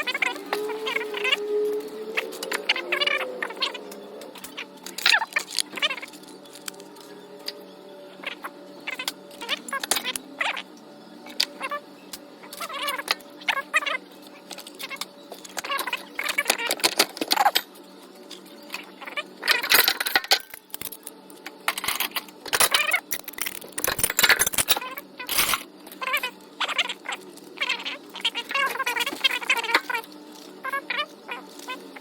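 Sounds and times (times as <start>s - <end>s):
metal wrenches clinking: 21.7s - 25.6s.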